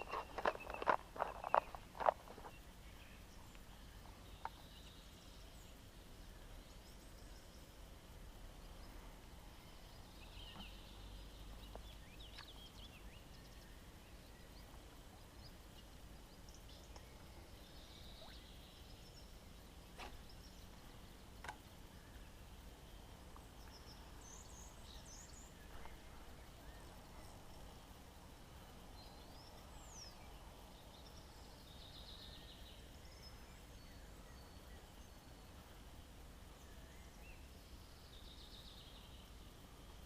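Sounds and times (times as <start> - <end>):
distant bird calls: 0.0 - 7.7.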